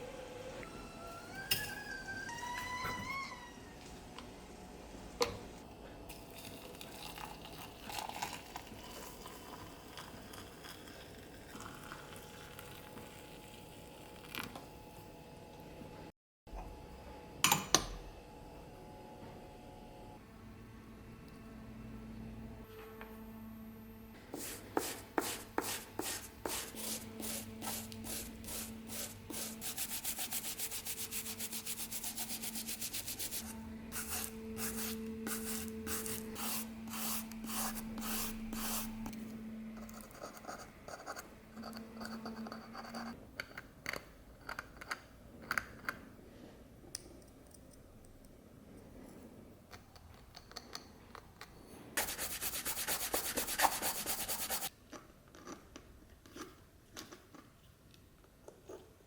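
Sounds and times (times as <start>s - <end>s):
brush scrubbing a hard surface: 24.4s - 39.0s, 52.0s - 54.7s.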